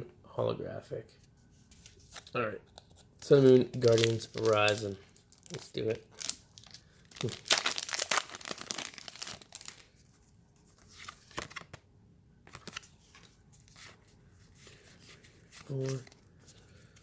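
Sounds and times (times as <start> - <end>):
foil wrapper tearing: 3.8 - 9.9
wrapper crackling: 3.8 - 10.0.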